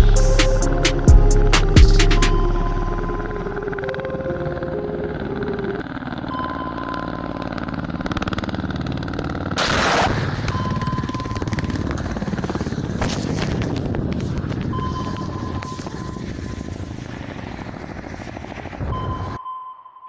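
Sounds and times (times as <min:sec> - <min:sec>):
helicopter rotors chopping: 0:00.0 - 0:19.4
sharp crack: 0:09.6 - 0:10.7
weapons fire: 0:09.6 - 0:10.8.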